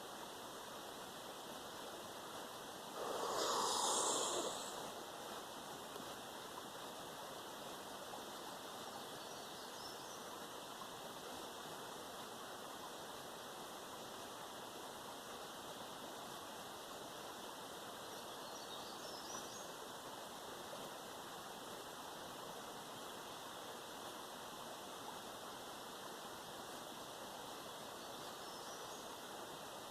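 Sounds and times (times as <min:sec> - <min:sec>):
faint background hiss: 0:00.0 - 0:29.9
breath blown out: 0:03.0 - 0:05.0.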